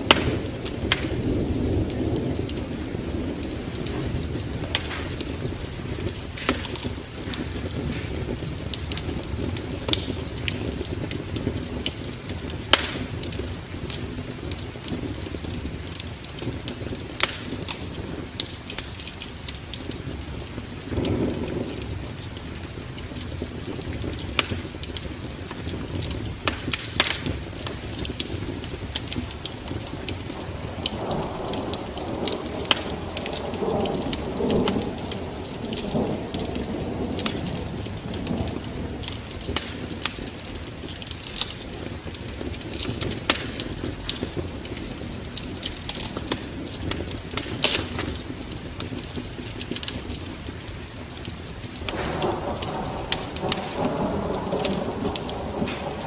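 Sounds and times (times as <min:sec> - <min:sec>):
wood fire crackling and popping: 0:00.0 - 0:56.0
deep rumble: 0:51.8 - 0:56.0.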